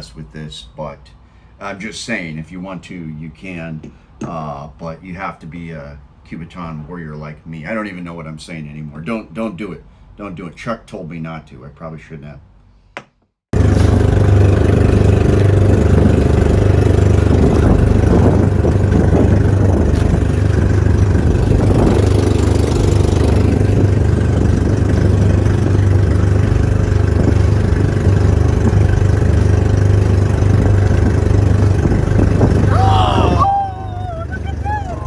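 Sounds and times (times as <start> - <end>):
engine running with low hum: 13.6 - 35.0.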